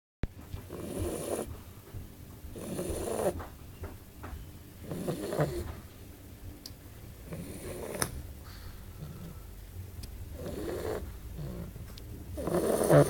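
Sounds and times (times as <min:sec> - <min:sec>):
dog snoring: 0:00.6 - 0:01.6, 0:02.5 - 0:03.5, 0:04.8 - 0:05.9, 0:07.2 - 0:09.5, 0:10.3 - 0:13.0.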